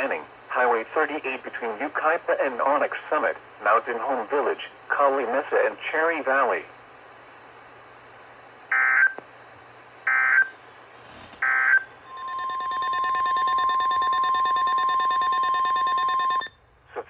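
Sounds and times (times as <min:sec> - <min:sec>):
long steady alert tone: 0:12.0 - 0:16.7
digital data tone bursts: 0:12.1 - 0:16.6.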